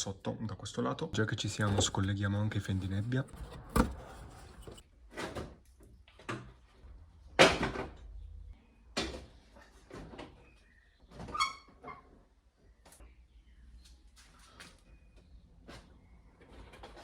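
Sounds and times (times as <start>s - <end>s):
plastic knocks and clunks: 1.4s - 4.8s.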